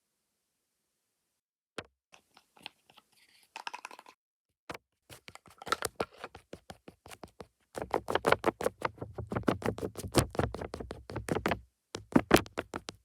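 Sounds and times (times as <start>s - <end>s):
tapping and scratching on microphone: 5.1s - 13.0s.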